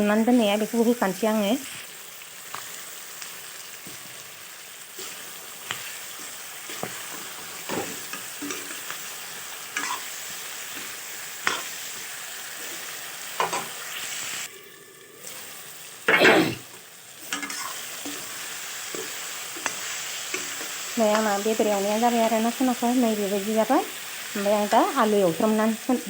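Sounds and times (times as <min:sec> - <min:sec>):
chicken sizzling in oil: 0:00.0 - 0:26.0
spatula scraping a pan: 0:05.0 - 0:14.2, 0:17.2 - 0:20.8.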